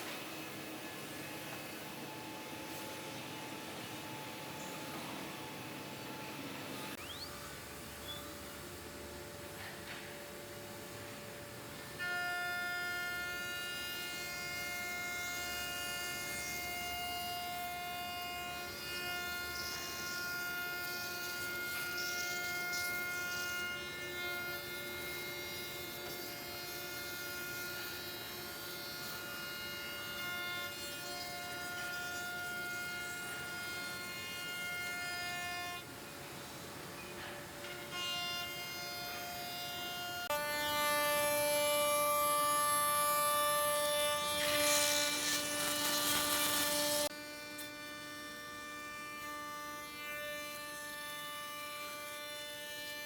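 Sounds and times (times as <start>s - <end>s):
cnc router whining: 37.6s - 52.9s.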